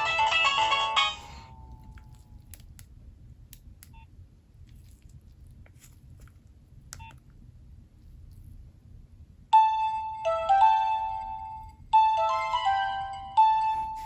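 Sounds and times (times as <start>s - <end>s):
phone ringtone melody: 0.0s - 1.7s, 9.6s - 14.0s.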